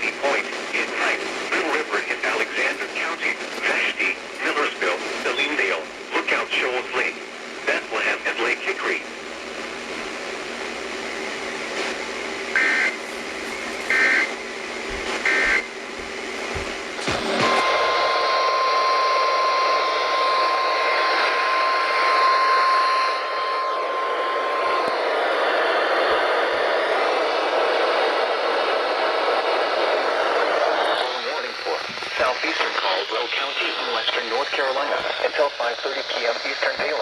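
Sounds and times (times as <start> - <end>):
radio hiss: 0.0 - 37.0
warbling two-tone data squawks: 12.6 - 13.0, 13.9 - 14.4
steady warning alert tone: 12.6 - 19.2.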